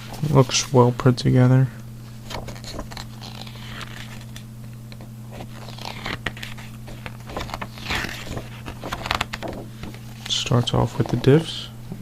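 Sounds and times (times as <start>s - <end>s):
steady low hum: 0.0s - 12.0s
paper pages turning: 2.0s - 11.6s.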